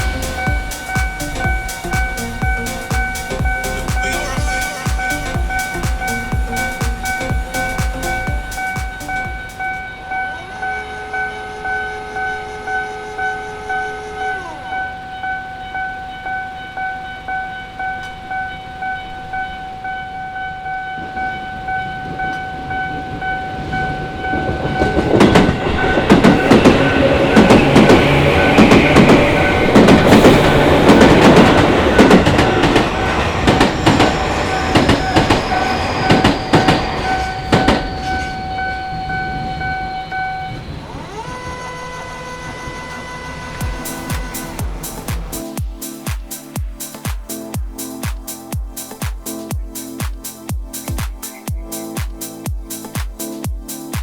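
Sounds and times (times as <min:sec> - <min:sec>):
level crossing warning bell: 0:00.0 - 0:40.7
train wheels clattering over joints: 0:24.3 - 0:38.4.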